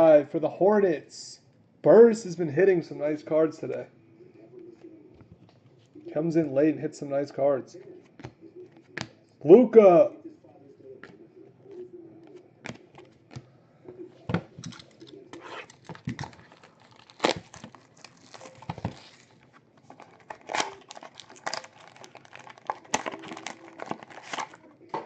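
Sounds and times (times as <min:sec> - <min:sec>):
wrappers crinkling and tearing: 0:14.6 - 0:24.7.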